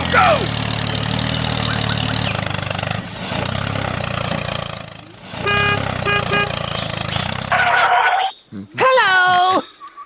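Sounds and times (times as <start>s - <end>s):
small engine humming: 0.0s - 7.5s
short horn-like beep: 5.4s - 6.6s.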